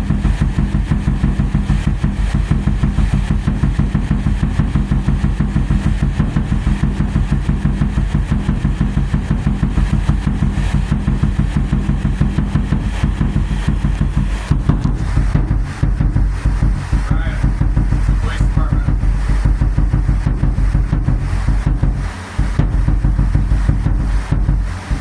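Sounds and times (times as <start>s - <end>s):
vehicle engine idling: 0.0s - 25.0s.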